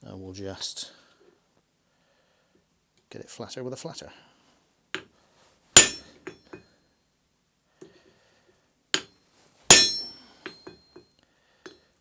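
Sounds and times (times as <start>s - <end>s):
hammer blows on metal: 5.8s - 6.4s, 9.7s - 10.7s.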